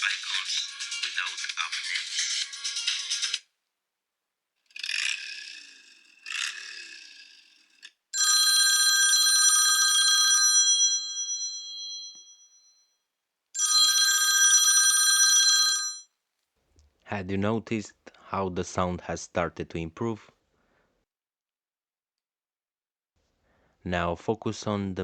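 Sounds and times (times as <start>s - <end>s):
telephone bell ringtone: 8.2s - 13.0s, 13.6s - 16.1s.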